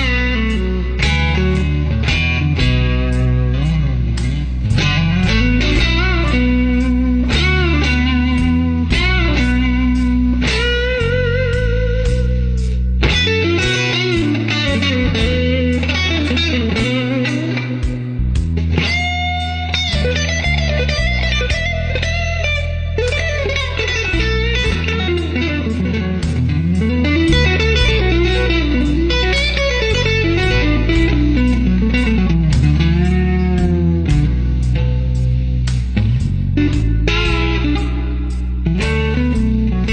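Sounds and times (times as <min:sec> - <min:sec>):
electric guitar lead: 0:00.0 - 0:39.9
low bass line: 0:00.0 - 0:39.9.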